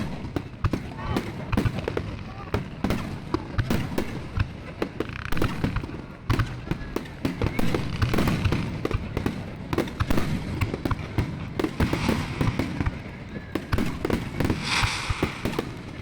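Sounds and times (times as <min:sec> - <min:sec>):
fireworks bursting: 0:07.4 - 0:16.0
low rumble: 0:14.6 - 0:15.9.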